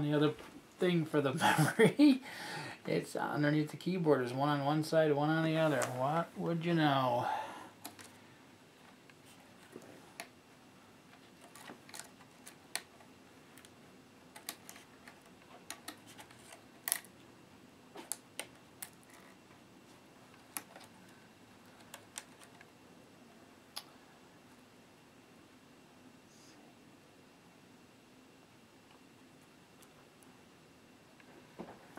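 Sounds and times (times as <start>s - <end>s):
plastic laptop parts clicking: 11.4s - 12.9s, 13.6s - 17.1s, 18.0s - 19.4s, 20.4s - 20.9s, 21.7s - 22.7s.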